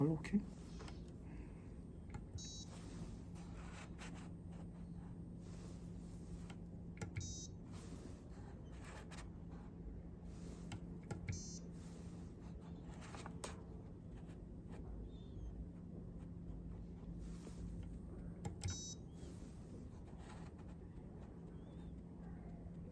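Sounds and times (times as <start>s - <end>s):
low electrical hum: 0.0s - 22.9s
buzzer high beeps: 2.4s - 2.7s, 7.2s - 7.5s, 11.3s - 11.6s, 18.7s - 19.0s.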